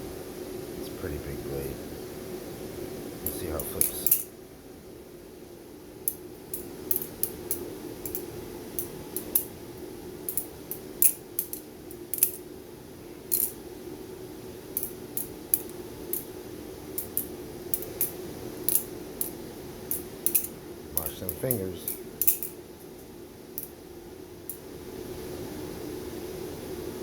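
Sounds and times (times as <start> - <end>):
butterfly knife clacking: 3.6 - 4.3, 6.1 - 9.6, 10.3 - 12.4, 13.3 - 13.6, 14.8 - 16.3, 17.0 - 22.6.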